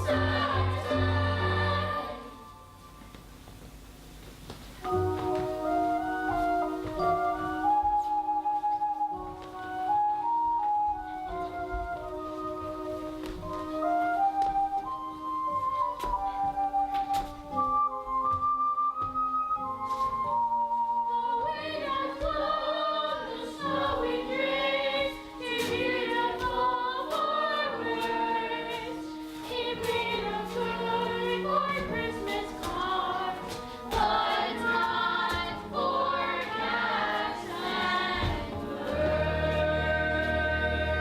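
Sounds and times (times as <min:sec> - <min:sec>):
choir singing: 0:00.0 - 0:02.7, 0:21.1 - 0:41.0.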